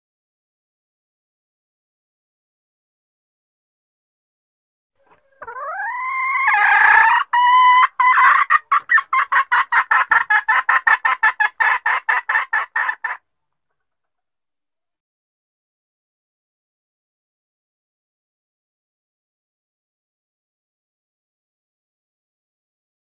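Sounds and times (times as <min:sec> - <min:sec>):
hen clucking: 0:05.0 - 0:13.2
hen squawking and cackling: 0:05.0 - 0:13.2.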